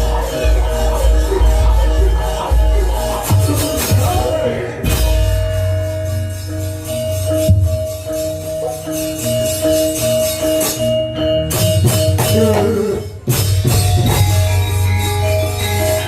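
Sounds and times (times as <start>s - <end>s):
low bass: 0.0s - 8.6s
metallophones playing melody: 0.0s - 16.0s.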